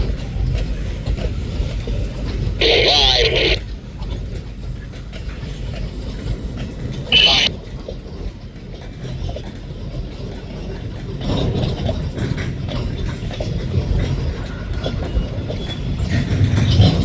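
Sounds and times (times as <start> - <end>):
freight train cars rumbling: 0.0 - 17.0
wheels clicking over rail joints: 8.0 - 17.0.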